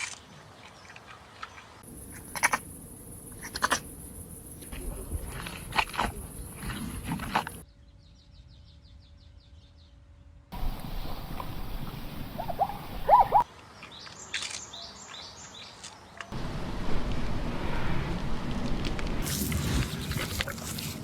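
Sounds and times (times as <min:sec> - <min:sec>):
steady outdoor hiss: 0:00.0 - 0:21.0
rising-and-falling bird calls: 0:10.7 - 0:13.4
high bird chirps: 0:10.9 - 0:13.4.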